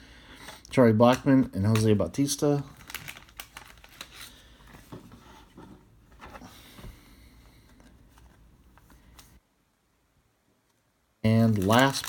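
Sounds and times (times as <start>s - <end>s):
cards and wrappers rustling: 0.5s - 6.8s, 11.3s - 12.0s.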